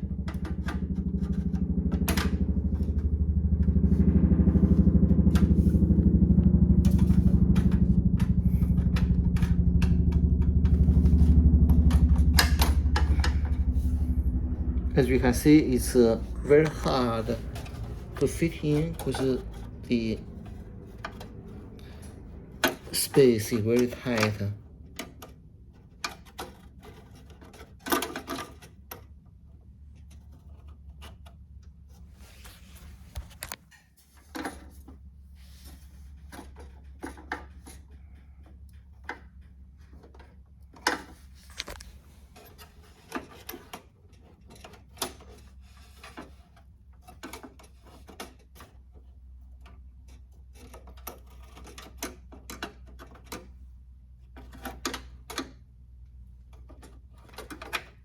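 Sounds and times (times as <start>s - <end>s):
steady low hum: 0.0s - 26.4s, 31.8s - 33.6s.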